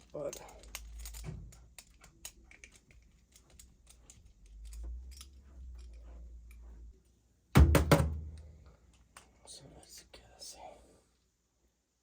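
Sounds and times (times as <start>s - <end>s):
small metal parts clicking: 0.0s - 6.7s.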